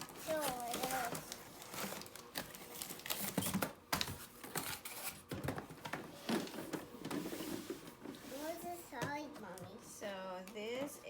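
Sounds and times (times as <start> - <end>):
packaging crinkling: 0.0 - 5.3.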